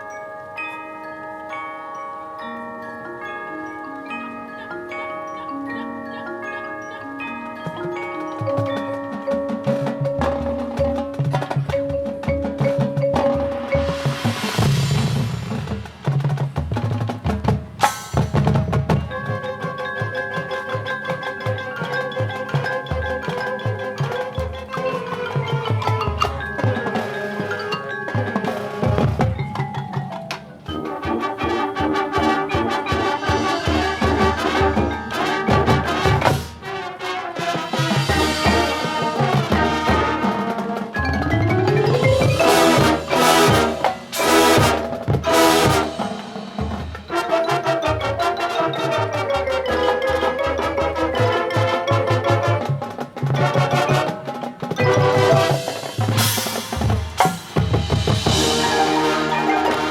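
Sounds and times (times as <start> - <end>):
marching band playing: 2.8 - 59.9
loud accented hits: 41.0 - 47.5.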